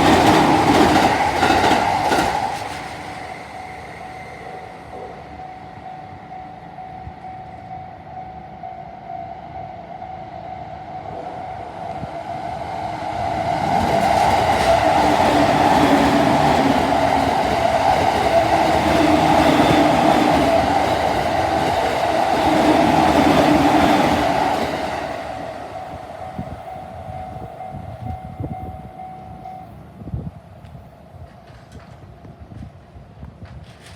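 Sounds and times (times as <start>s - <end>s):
train passing: 0.0s - 33.9s
crossing warning bell ringing: 4.0s - 12.0s, 14.2s - 30.0s.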